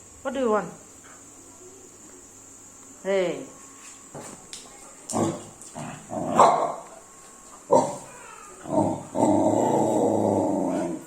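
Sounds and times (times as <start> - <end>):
dog grumbling barks: 5.1 - 6.8, 7.7 - 11.0.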